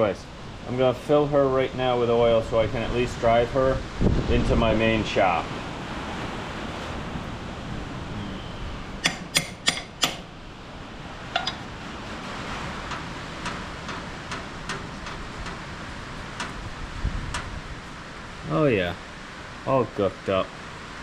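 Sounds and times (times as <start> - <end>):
wind and rain: 0.0 - 9.1, 9.8 - 21.0
sharp clicks: 9.0 - 10.3
light ticks: 12.9 - 15.7.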